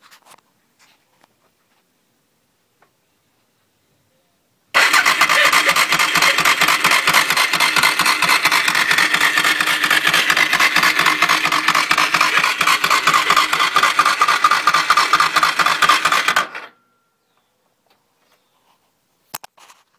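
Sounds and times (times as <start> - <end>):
motorcycle engine cranking: 4.8 - 16.8.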